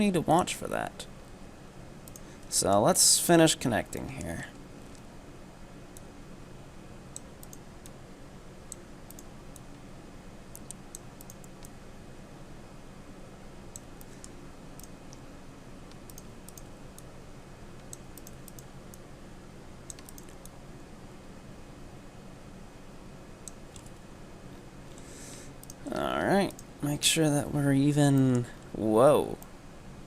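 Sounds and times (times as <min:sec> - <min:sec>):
steady low hum: 0:00.0 - 0:30.0
mouse clicking: 0:02.0 - 0:02.3, 0:07.1 - 0:08.0, 0:08.7 - 0:09.7, 0:10.5 - 0:11.8, 0:13.7 - 0:15.2, 0:15.9 - 0:17.1, 0:17.8 - 0:19.0, 0:19.9 - 0:20.5, 0:25.6 - 0:25.9
computer keyboard typing: 0:15.9 - 0:16.7, 0:19.9 - 0:20.5.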